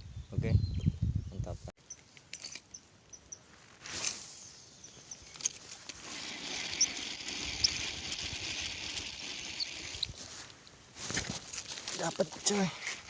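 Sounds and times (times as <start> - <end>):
bird chirps: 0.0 - 3.5, 4.4 - 5.6.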